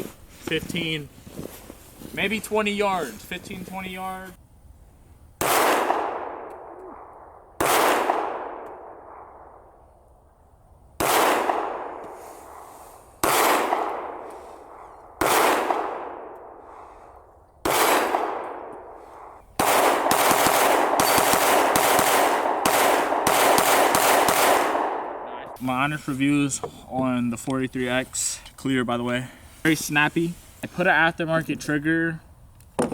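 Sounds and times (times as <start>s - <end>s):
pistol shots echoing: 5.4s - 9.8s, 11.0s - 16.9s, 17.6s - 25.5s.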